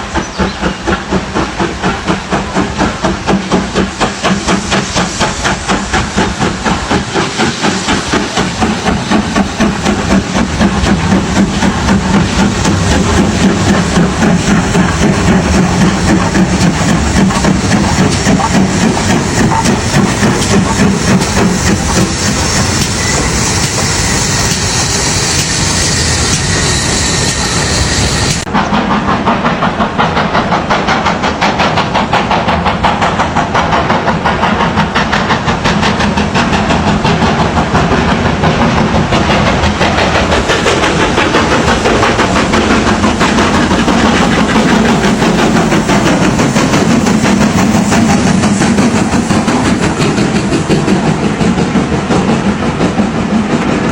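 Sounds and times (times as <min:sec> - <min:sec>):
steam train running: 0:00.0 - 0:53.9.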